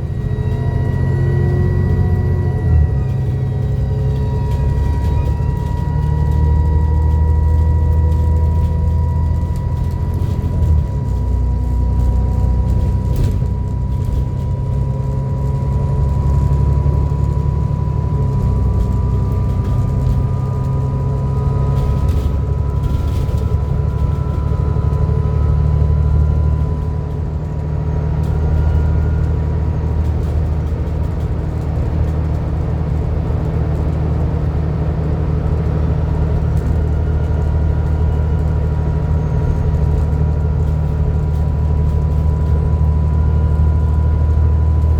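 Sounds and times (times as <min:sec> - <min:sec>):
bus diesel engine rumbling: 0:00.0 - 0:44.9
turbo whine: 0:00.0 - 0:44.9
whine rising in pitch: 0:00.0 - 0:44.9.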